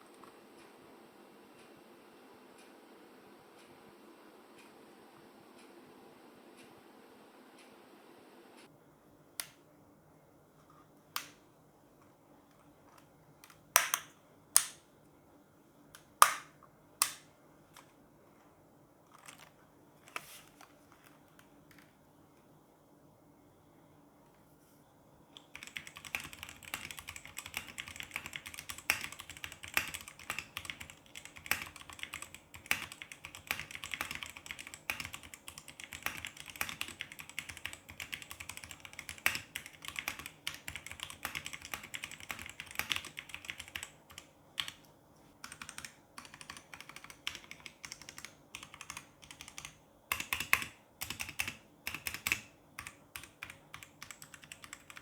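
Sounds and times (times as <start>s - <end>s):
mechanical keyboard typing: 13.0s - 14.8s, 16.0s - 17.2s, 19.1s - 21.9s, 25.4s - 55.0s.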